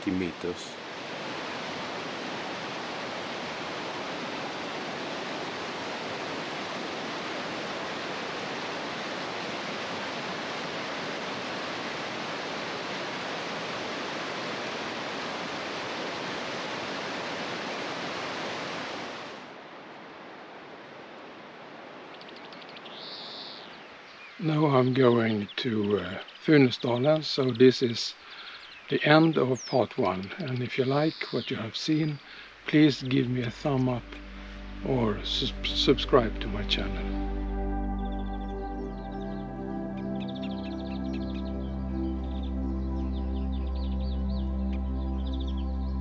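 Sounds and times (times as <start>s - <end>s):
waterfall rushing: 0.0s - 19.6s, 31.7s - 46.0s.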